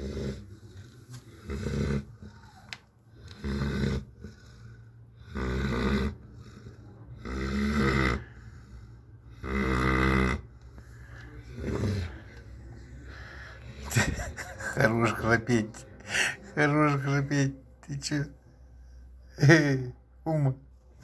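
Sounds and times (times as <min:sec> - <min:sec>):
dog snoring: 0:00.0 - 0:10.8, 0:11.4 - 0:12.3.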